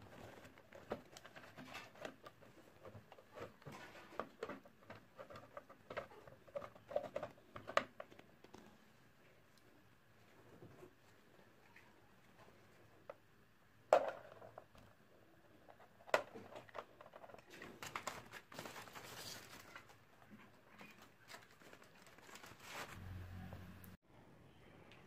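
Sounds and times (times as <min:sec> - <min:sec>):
small clicks and rustling: 0:00.0 - 0:08.9
plastic parts knocking: 0:00.1 - 0:08.6.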